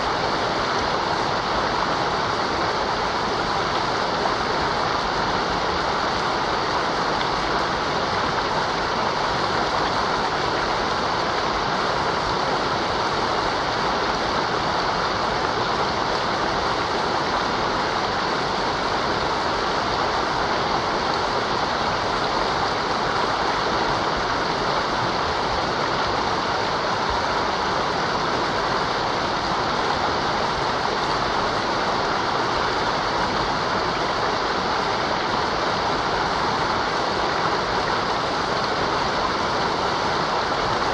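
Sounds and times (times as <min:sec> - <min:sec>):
river rushing over rocks: 0:00.0 - 0:40.9.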